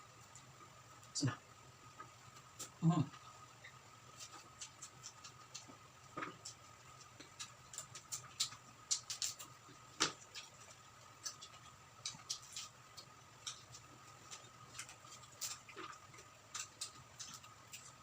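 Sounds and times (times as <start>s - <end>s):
chewing and crunching: 4.1s - 18.0s.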